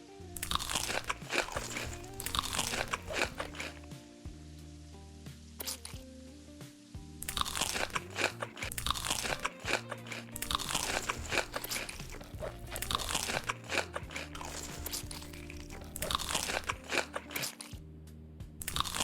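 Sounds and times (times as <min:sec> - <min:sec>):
background music: 0:00.0 - 0:19.0
crunchy eating: 0:00.4 - 0:04.1, 0:05.6 - 0:06.0, 0:07.2 - 0:17.8, 0:18.6 - 0:19.0.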